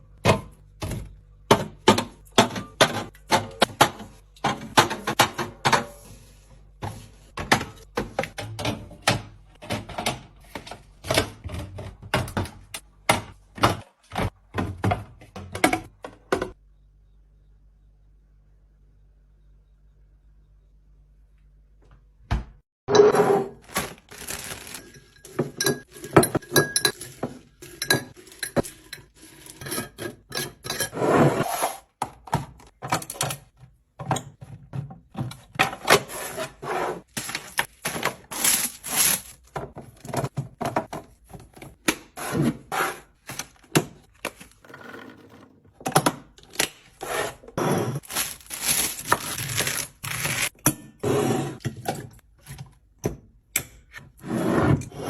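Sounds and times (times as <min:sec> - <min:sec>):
bottles and containers clinking: 0:22.9 - 0:31.0, 0:47.6 - 0:51.0.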